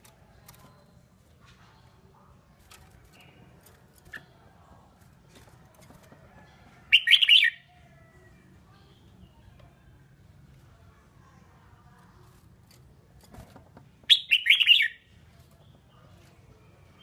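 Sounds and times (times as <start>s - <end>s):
bird chattering song: 6.9s - 7.6s, 14.1s - 16.1s.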